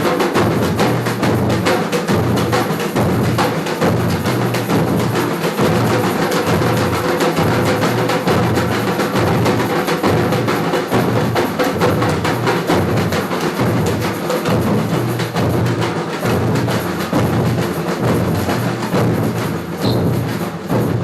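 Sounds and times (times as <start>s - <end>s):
drum and percussion beat: 0.0s - 21.0s
wood-block-like hits: 18.0s - 21.0s.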